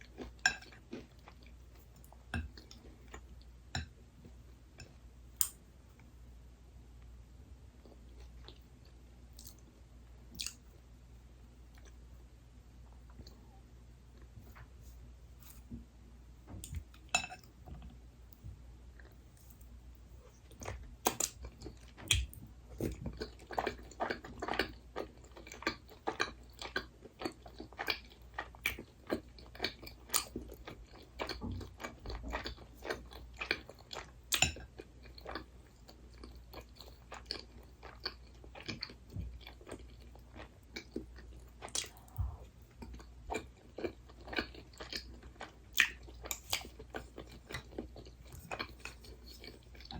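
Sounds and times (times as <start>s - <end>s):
chewing crunchy food: 10.3s - 10.8s, 18.9s - 49.9s.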